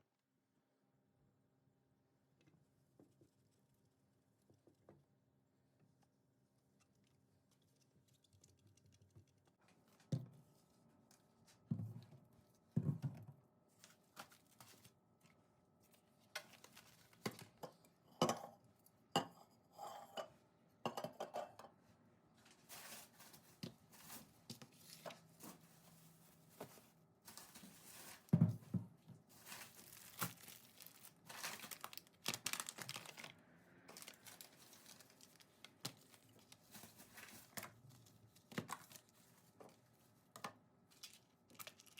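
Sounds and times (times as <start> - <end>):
rustling and crinkling: 13.7 - 17.6, 22.3 - 41.9.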